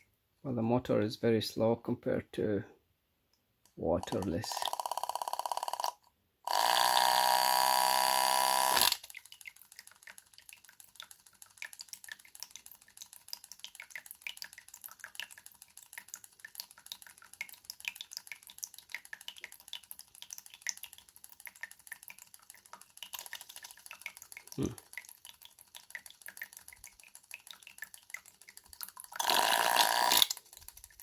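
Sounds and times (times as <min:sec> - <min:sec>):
small pump motor whining: 0:04.6 - 0:09.0, 0:29.2 - 0:30.4
water dripping: 0:08.9 - 0:31.0.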